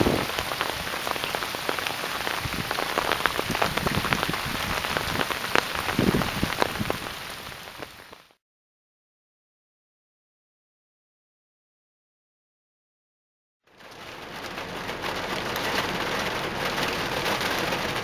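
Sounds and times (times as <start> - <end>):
heavy rain on a hard surface: 0.0 - 8.4, 13.7 - 18.0.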